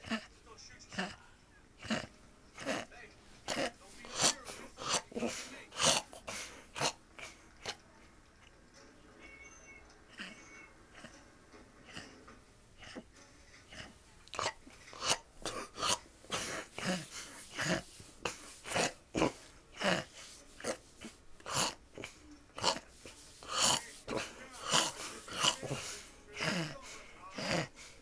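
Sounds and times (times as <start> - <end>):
person snoring: 13.6 - 28.0.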